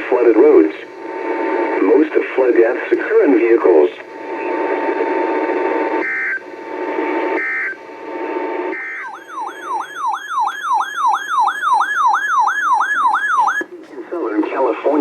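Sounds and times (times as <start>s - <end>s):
radio reception hiss: 0.0s - 8.7s, 13.6s - 15.0s
electronic siren tone: 7.4s - 7.8s, 8.6s - 13.7s
alert data bursts: 8.8s - 13.6s.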